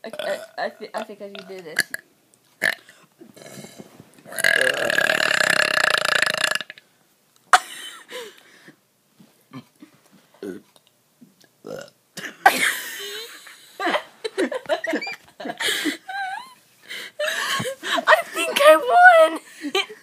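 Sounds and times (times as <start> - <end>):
person burping loudly: 0.0 - 2.0, 2.6 - 6.8, 10.4 - 10.6, 11.6 - 12.0.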